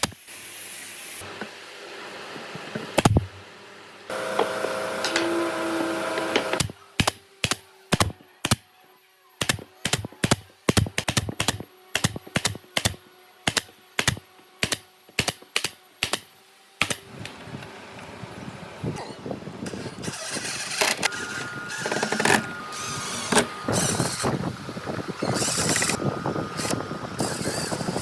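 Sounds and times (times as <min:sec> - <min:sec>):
machine with held tones: 0:04.1 - 0:06.6, 0:19.7 - 0:24.5.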